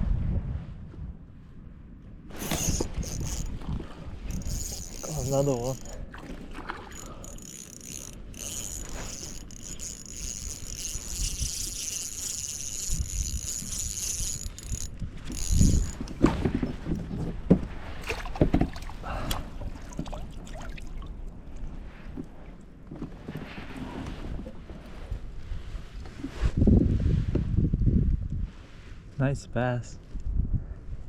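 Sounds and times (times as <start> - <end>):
fishing reel cranking: 2.3 - 3.7, 4.3 - 17.1.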